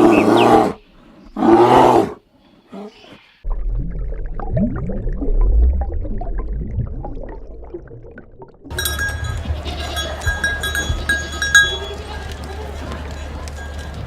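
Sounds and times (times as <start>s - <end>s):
animal calling: 0.0s - 3.2s.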